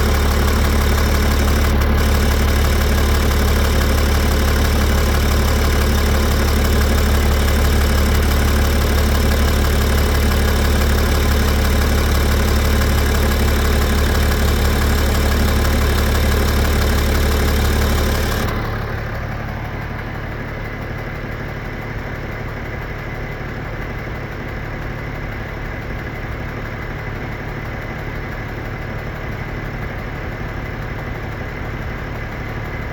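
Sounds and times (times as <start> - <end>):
diesel engine idling with knock: 0.0 - 32.9.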